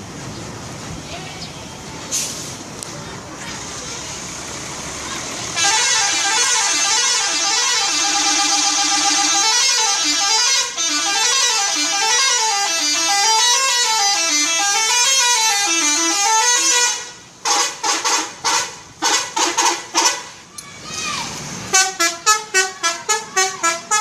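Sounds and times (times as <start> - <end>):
bus horn playing a tune: 5.5 - 20.4, 21.7 - 24.0
short horn blasts: 5.6 - 20.4, 21.7 - 24.0.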